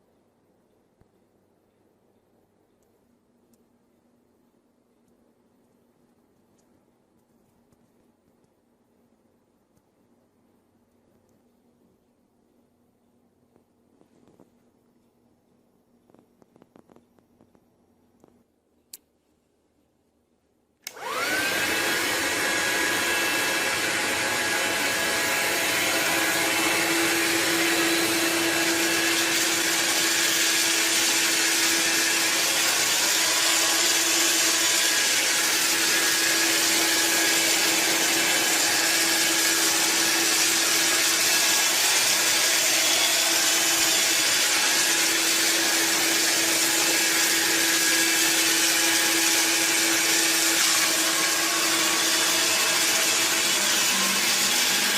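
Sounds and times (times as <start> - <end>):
vacuum motor whine: 20.9 - 54.9.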